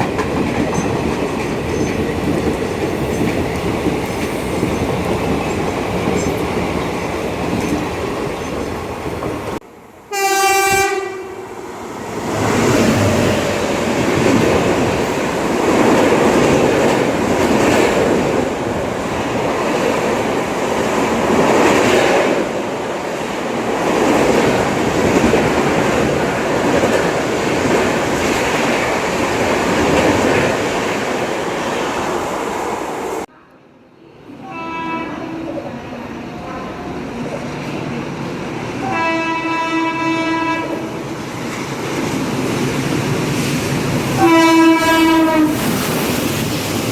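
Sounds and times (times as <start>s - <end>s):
train clattering on tracks: 0.0s - 9.6s, 11.9s - 33.2s, 36.3s - 46.9s
train horn: 10.1s - 11.5s, 34.4s - 35.5s, 38.8s - 41.0s, 44.2s - 45.7s.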